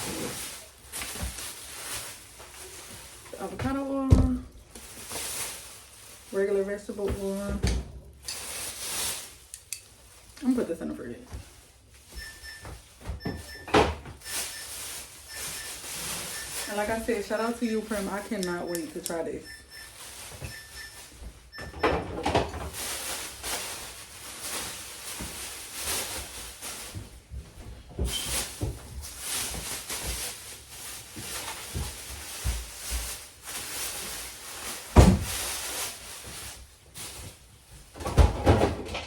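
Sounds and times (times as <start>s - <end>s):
rustling packaging: 0.0s - 7.5s, 8.1s - 10.6s, 14.2s - 21.2s, 22.6s - 27.3s, 28.1s - 37.6s
knocks and clunks of items: 12.2s - 17.0s, 20.4s - 22.9s, 37.9s - 39.0s.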